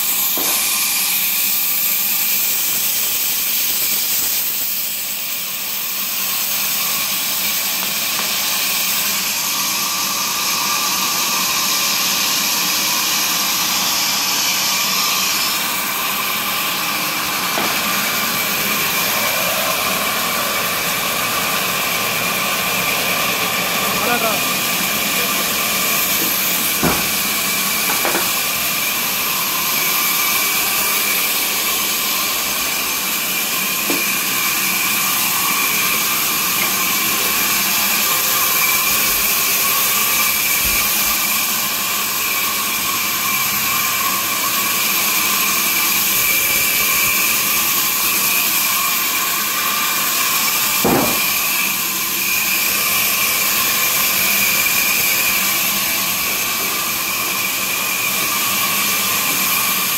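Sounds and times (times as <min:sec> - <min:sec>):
sawmill machinery whirring: 0:00.0 - 0:59.9
brief knock: 0:50.8 - 0:51.3.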